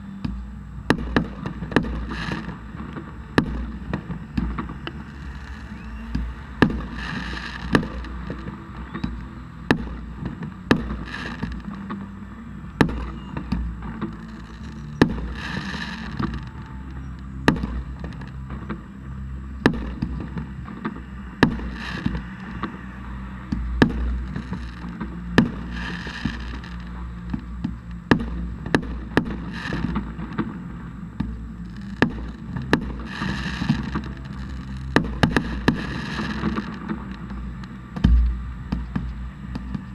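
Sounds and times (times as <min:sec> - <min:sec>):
fireworks hissing bursts: 0:00.9 - 0:11.7, 0:12.8 - 0:16.7, 0:21.5 - 0:22.8, 0:25.5 - 0:26.8, 0:29.1 - 0:30.5, 0:31.7 - 0:37.4
fireworks bangs: 0:00.9 - 0:12.0, 0:19.6 - 0:22.8, 0:23.5 - 0:30.6, 0:31.2 - 0:39.9.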